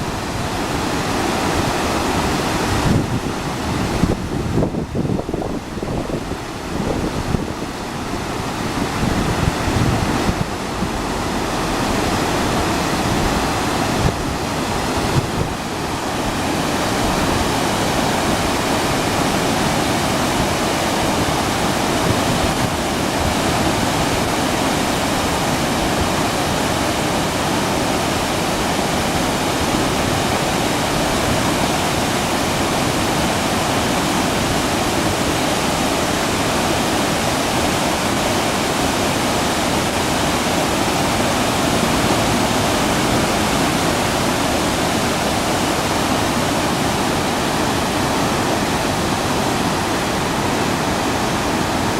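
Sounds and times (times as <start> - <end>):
wind buffeting microphone: 0.0 - 27.5
river water rushing: 0.0 - 51.9.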